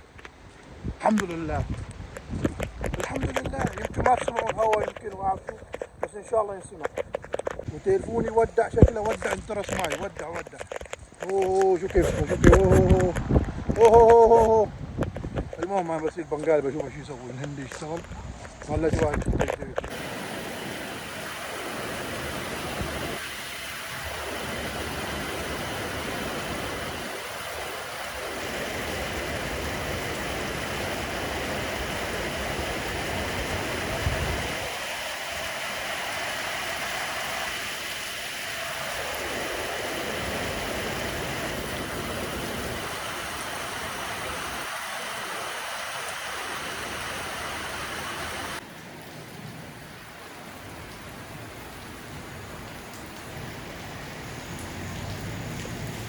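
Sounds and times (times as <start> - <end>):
wind gusting on microphone: 0.0 - 16.4, 17.0 - 48.6
heavy rain: 19.9 - 56.0.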